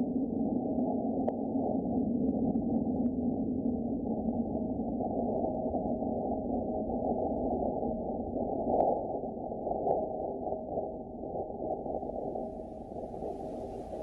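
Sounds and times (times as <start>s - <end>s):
steady hissing rumble: 11.8s - 14.0s.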